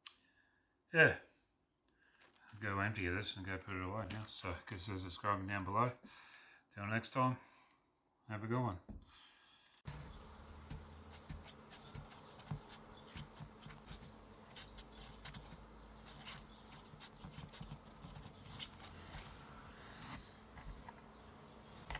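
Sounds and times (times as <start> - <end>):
low steady hum: 9.9 - 21.9.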